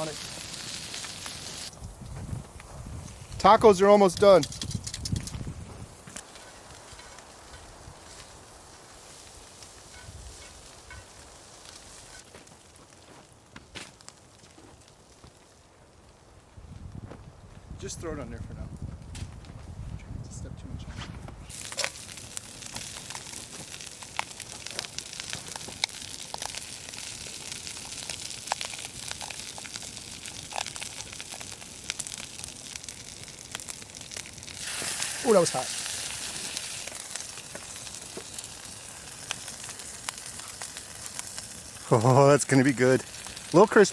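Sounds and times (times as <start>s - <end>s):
meat sizzling in a skillet: 0.0s - 1.7s, 6.5s - 12.2s, 21.5s - 43.9s
fire crackles: 0.0s - 43.9s.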